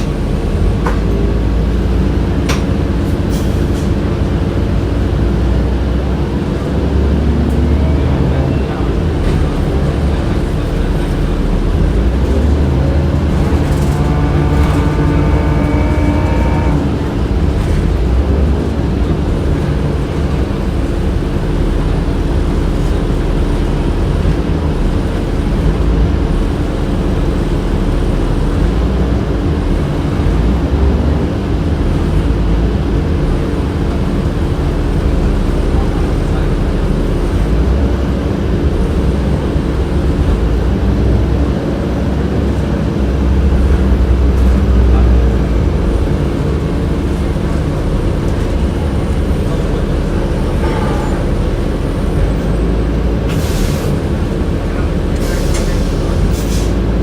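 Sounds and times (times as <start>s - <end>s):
bus rumbling on road: 0.0s - 57.0s
whine rising in pitch: 13.7s - 17.4s.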